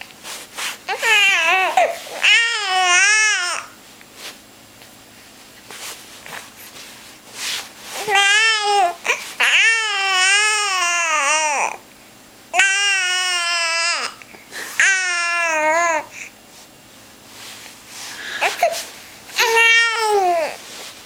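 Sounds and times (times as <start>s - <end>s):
baby crying and babbling: 0.9s - 3.8s, 8.0s - 11.8s, 12.5s - 14.2s, 14.8s - 16.2s, 18.4s - 20.6s.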